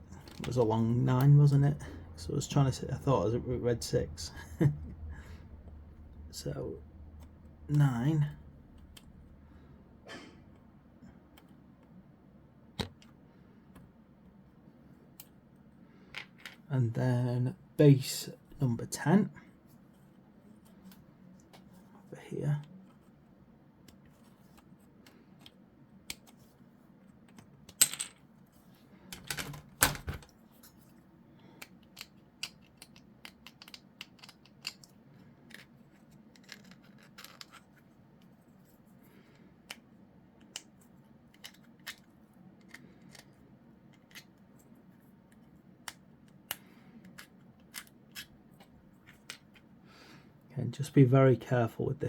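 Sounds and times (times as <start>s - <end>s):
plastic pieces clicking: 31.6s - 34.9s.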